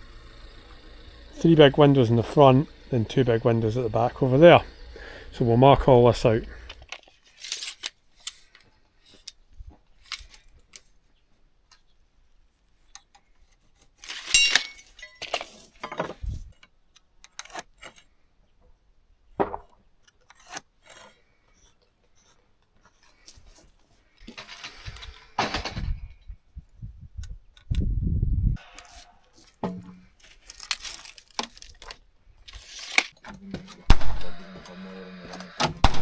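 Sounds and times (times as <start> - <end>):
ringing metal clink: 14.3 - 15.3.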